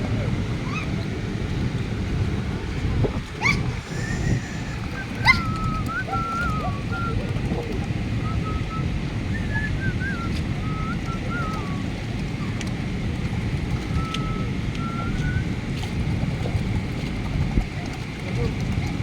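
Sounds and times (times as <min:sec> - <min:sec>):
boat rumble on water: 0:00.0 - 0:19.0
wavering whistle-like tone: 0:03.8 - 0:11.9, 0:13.8 - 0:15.5.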